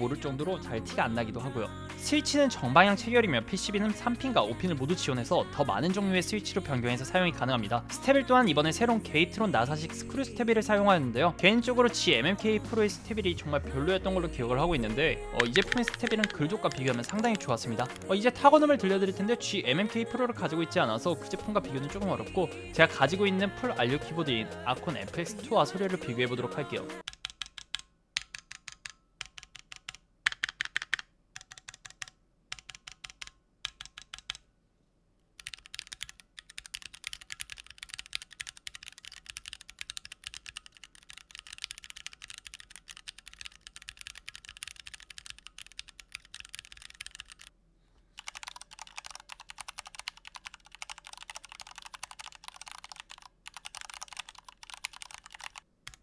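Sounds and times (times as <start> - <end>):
typing on mechanical keyboard: 15.4 - 18.1, 24.3 - 34.4, 35.4 - 47.5, 48.2 - 56.0.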